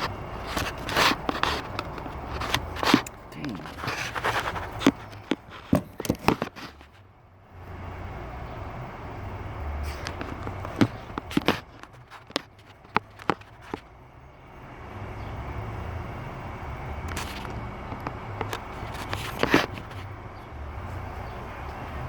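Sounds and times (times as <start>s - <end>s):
sharp knocks and clicks: 0.0s - 6.9s, 10.0s - 13.9s.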